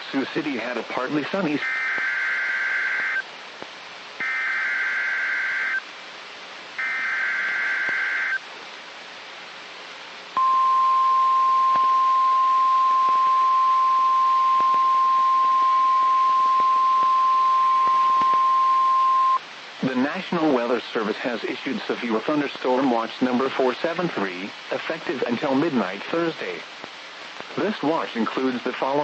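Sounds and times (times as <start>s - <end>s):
radio hiss: 0.0s - 8.8s, 10.0s - 29.0s
steady warning alarm tone: 1.6s - 3.2s, 4.2s - 5.8s, 6.8s - 8.4s, 10.4s - 19.4s.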